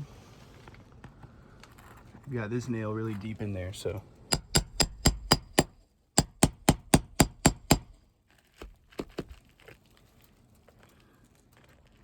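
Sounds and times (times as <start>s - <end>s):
hammer tapping on metal nail puller: 4.3s - 8.0s.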